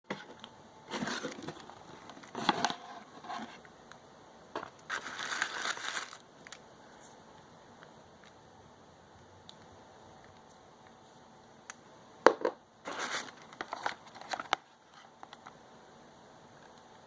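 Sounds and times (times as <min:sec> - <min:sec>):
packaging crinkling and rustling: 0:00.1 - 0:03.6, 0:04.6 - 0:06.6, 0:12.9 - 0:15.5.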